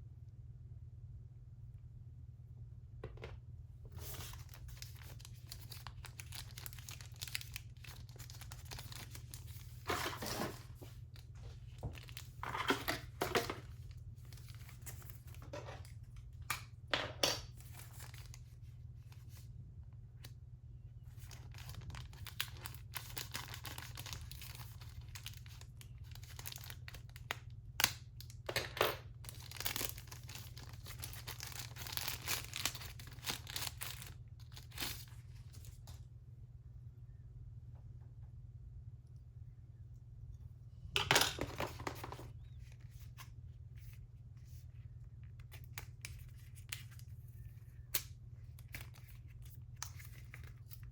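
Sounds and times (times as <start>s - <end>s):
steady low hum: 0.0s - 50.9s
packaging crinkling and tearing: 3.9s - 16.5s, 17.4s - 19.4s, 21.1s - 36.0s, 45.3s - 50.9s.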